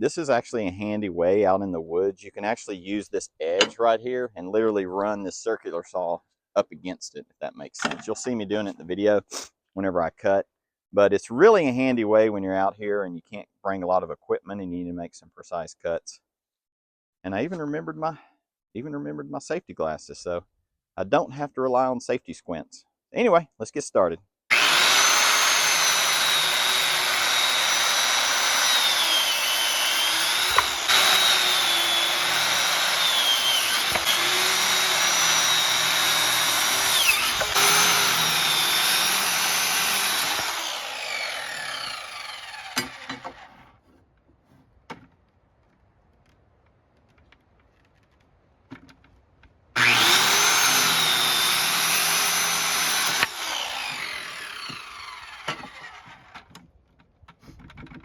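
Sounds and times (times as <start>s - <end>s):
circular saw cutting wood: 24.5s - 43.8s, 49.8s - 56.5s.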